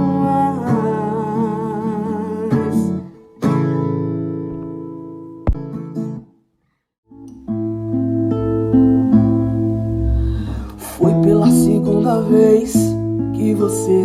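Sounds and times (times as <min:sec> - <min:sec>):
person singing with vibrato: 0:00.0 - 0:03.0, 0:09.7 - 0:14.0
strummed acoustic guitar: 0:00.0 - 0:06.3, 0:07.1 - 0:14.0
sharp click: 0:05.5 - 0:05.8.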